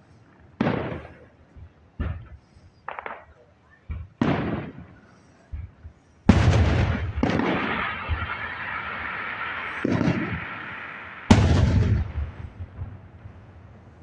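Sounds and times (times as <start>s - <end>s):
loud bangs with rumbling tail: 6.3s - 13.4s.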